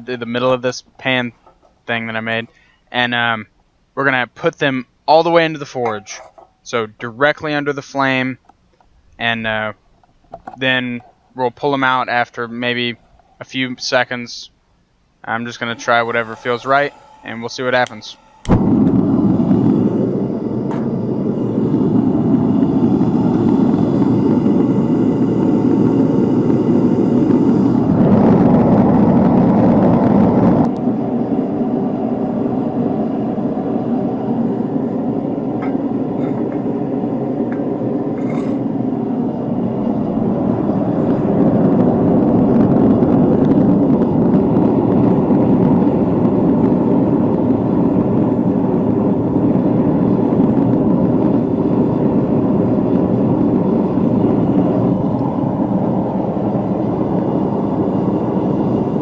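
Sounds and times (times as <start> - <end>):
gas burner flame roaring: 15.4 - 59.0.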